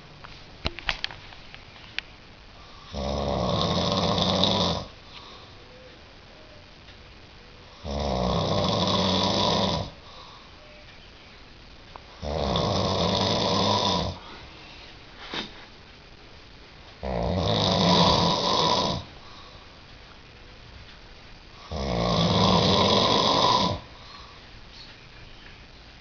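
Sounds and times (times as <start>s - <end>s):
quiet breathing: 1.6s - 25.6s
person snoring loudly: 2.8s - 4.9s, 7.7s - 10.0s, 12.2s - 14.2s, 17.0s - 19.1s, 21.6s - 23.9s.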